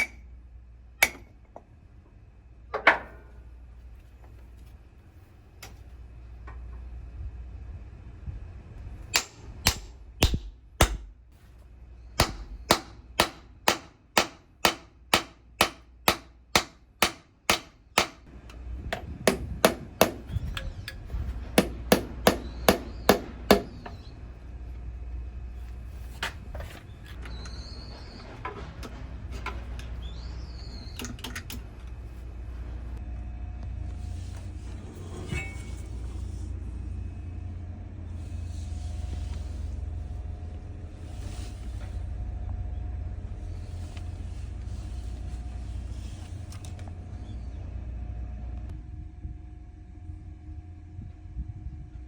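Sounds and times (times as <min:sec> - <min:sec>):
steady low hum: 0:00.0 - 0:52.0
hammer strikes: 0:01.0 - 0:01.3, 0:09.1 - 0:11.2, 0:12.2 - 0:18.3, 0:18.9 - 0:20.3, 0:21.6 - 0:23.8.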